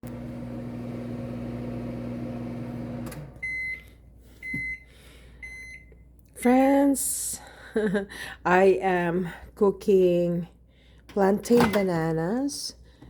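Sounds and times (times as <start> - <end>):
microwave oven humming: 0.0 - 4.0
microwave click: 2.6 - 3.6.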